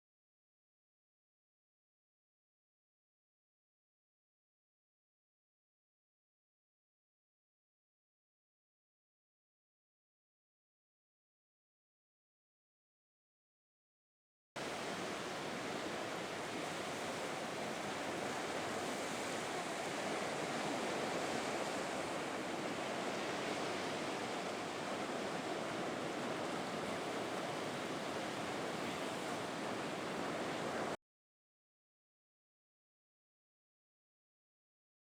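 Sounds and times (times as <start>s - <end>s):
ocean surf washing on beach: 14.6s - 31.0s.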